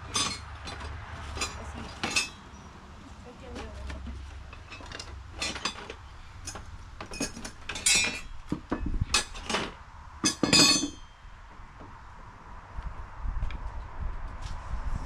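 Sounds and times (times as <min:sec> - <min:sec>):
tools clinking against nails: 0:00.0 - 0:02.4, 0:04.5 - 0:08.4, 0:09.1 - 0:11.1.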